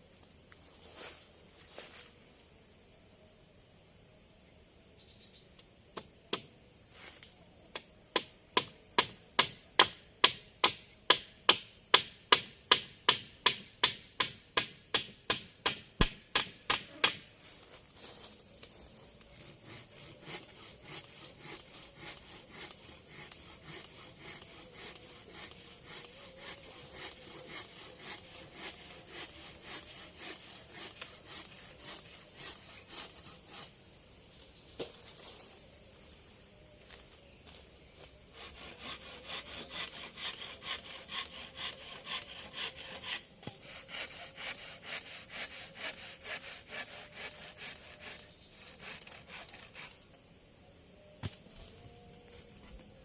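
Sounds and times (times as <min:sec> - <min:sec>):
forest insects droning: 0:00.0 - 0:53.0
sharp evenly spaced knocks: 0:08.2 - 0:17.3.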